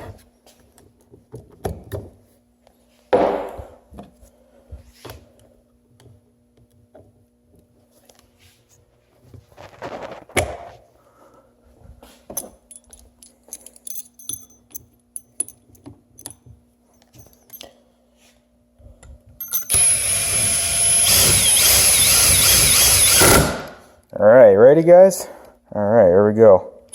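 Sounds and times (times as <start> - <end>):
small metallic clinks: 12.4 - 17.8, 19.4 - 19.8
impact wrench running: 19.6 - 23.9.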